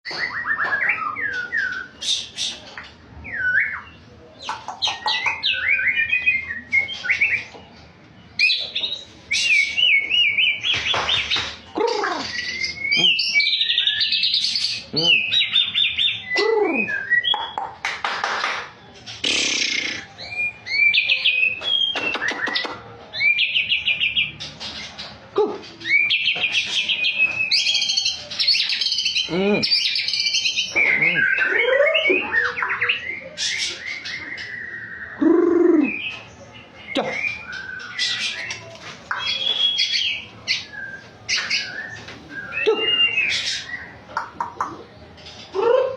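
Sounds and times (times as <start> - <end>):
bird singing varied song: 0.0 - 45.8.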